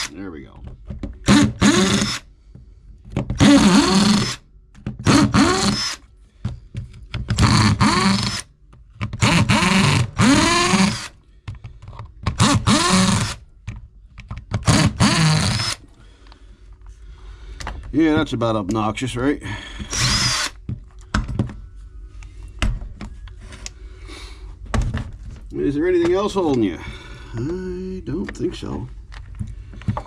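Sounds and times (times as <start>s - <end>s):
power driver motor whirring: 7.4s - 8.4s, 9.2s - 11.1s, 12.4s - 13.4s, 14.6s - 15.8s, 19.8s - 20.6s.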